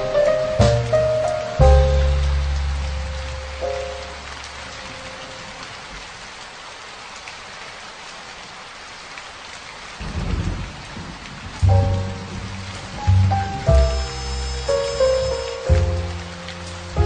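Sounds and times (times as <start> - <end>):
thunder rumble: 0.0 - 6.1, 10.0 - 17.0
steady rain: 0.0 - 17.0.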